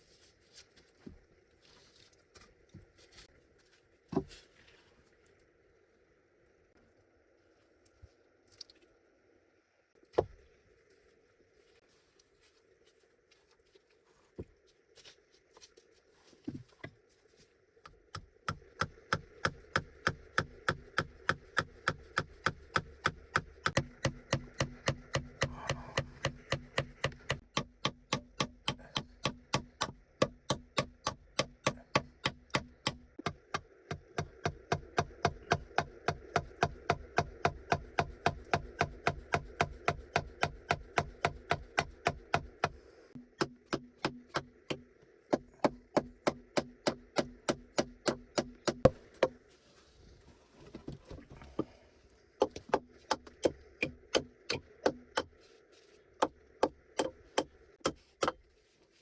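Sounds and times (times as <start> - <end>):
chopping wood: 18.2 - 49.4.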